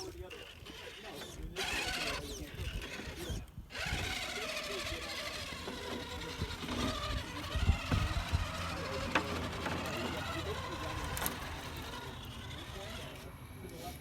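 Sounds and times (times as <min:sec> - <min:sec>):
electric motor whining: 0:00.0 - 0:14.0.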